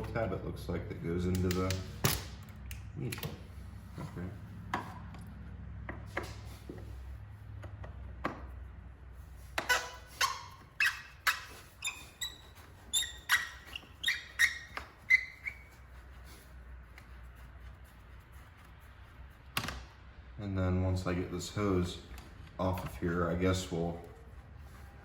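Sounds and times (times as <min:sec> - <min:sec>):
rubber and plastic parts squeaking: 0:09.2 - 0:16.4.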